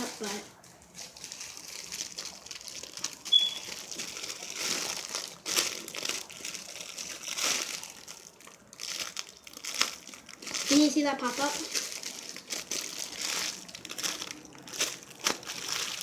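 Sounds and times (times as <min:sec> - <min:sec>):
plastic packaging crinkling: 0:00.0 - 0:16.0
squishy toy squeaking: 0:03.3 - 0:03.7.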